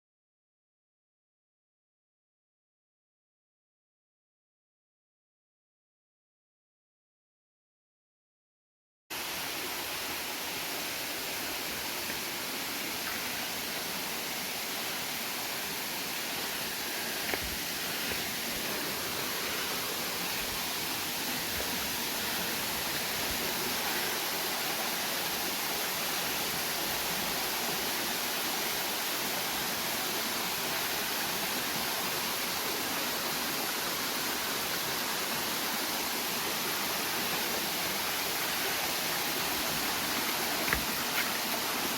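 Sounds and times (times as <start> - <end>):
water rushing: 9.1 - 41.9.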